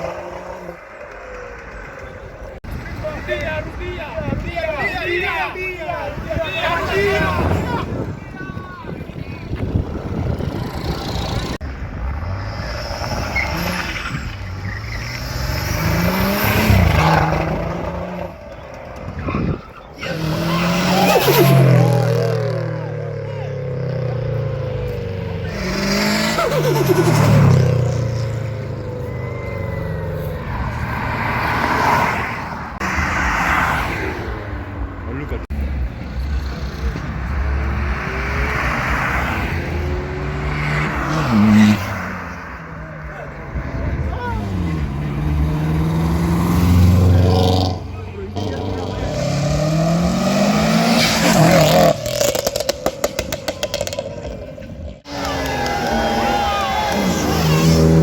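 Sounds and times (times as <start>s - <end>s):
car engine accelerating: 9.6s - 58.0s
car engine accelerating past: 36.2s - 58.0s.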